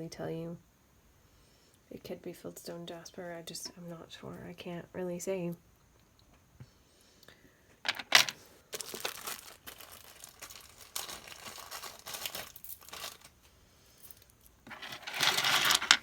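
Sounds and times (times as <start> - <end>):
plastic bag crinkling: 7.9 - 16.0.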